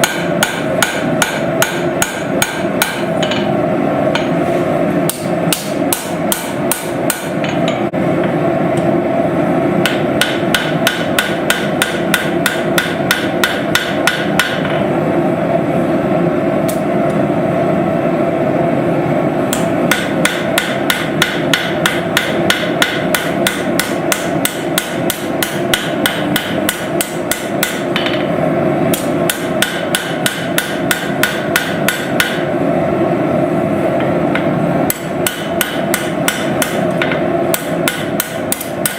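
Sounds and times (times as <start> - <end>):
hammer striking hot steel: 0.0 - 4.4, 5.1 - 7.9, 9.8 - 14.9, 19.5 - 32.6, 34.0 - 38.9
steady background roar: 0.0 - 38.9.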